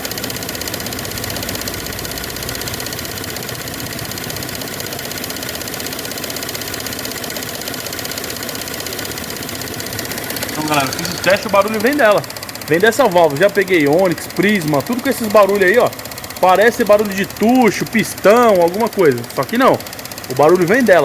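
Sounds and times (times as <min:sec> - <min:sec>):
car engine idling: 0:00.0 - 0:21.0
rapid steady ticking: 0:00.0 - 0:21.0.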